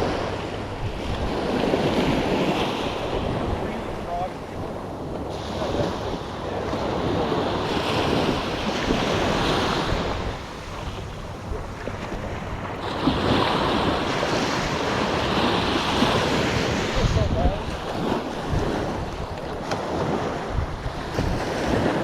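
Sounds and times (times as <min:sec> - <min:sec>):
surf washing onto beach: 0:00.0 - 0:22.0
wind buffeting microphone: 0:00.0 - 0:22.0.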